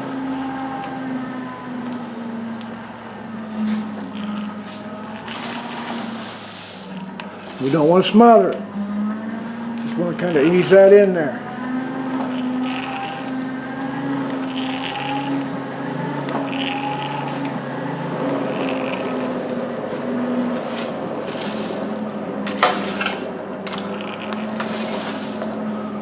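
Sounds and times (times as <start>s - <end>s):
forge tool scraping coal: 0.0s - 26.0s
hand-cranked forge blower hum: 0.0s - 26.0s.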